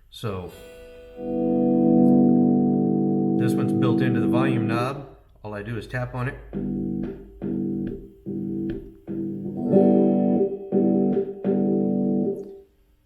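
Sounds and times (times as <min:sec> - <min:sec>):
stuttering electric guitar chord: 0:00.7 - 0:04.8, 0:06.5 - 0:12.5.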